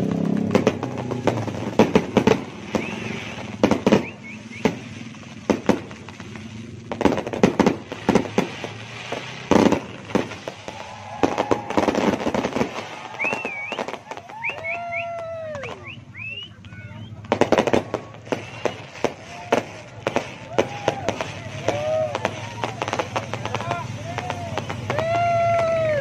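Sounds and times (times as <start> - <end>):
fireworks bangs and crackles: 0.0 - 26.0
wavering whistle-like tones: 2.7 - 4.9, 13.0 - 17.2, 18.3 - 19.0.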